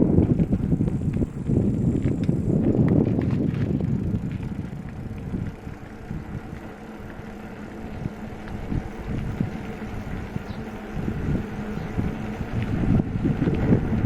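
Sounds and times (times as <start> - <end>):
bicycle riding rumble: 0.0 - 14.0
wind buffeting microphone: 0.0 - 14.0.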